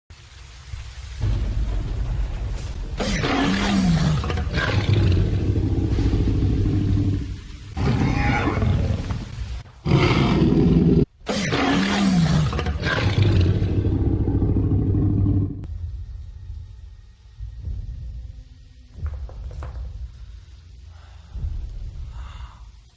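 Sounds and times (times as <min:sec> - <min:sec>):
dinosaur roar: 0:03.0 - 0:15.7.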